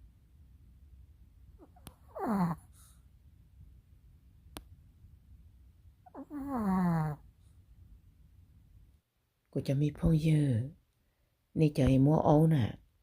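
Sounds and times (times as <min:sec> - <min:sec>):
dog whining groans: 0:01.6 - 0:02.8, 0:06.1 - 0:07.2
dog snoring: 0:01.6 - 0:03.0, 0:06.0 - 0:07.2.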